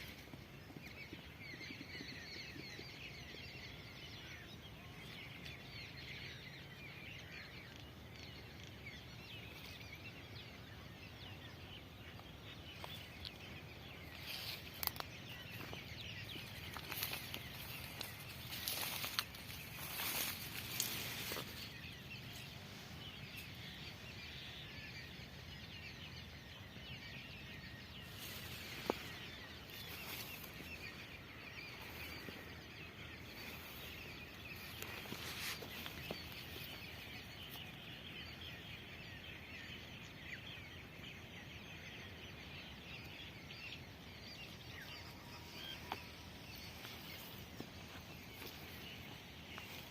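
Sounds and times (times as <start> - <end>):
bird chirps and calls: 0.0 - 49.9.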